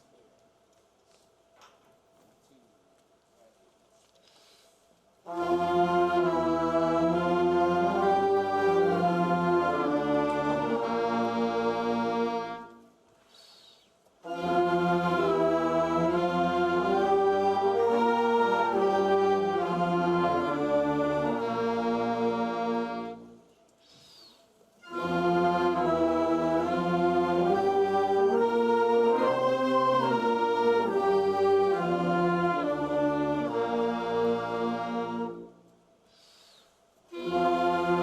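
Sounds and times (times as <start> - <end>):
band playing sustained chords: 5.3 - 12.7, 14.3 - 23.4, 24.9 - 35.5.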